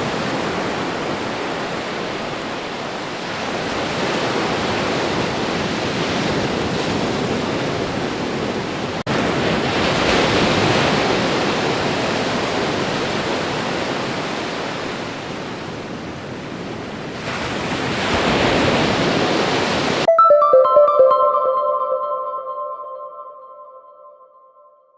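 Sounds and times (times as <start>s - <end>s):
music with pitched notes: 20.1s - 24.8s.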